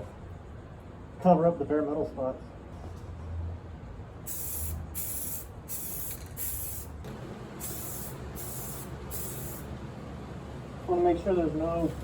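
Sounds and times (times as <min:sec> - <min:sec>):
steady low hum: 0:03.6 - 0:12.0
aerosol can spraying: 0:04.3 - 0:07.0, 0:07.6 - 0:09.6.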